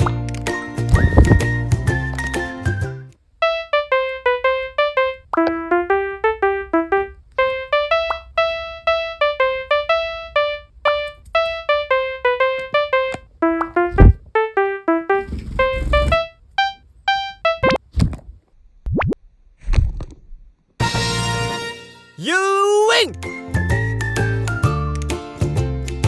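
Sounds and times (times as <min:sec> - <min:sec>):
bouncy keyboard melody: 0:00.0 - 0:17.8.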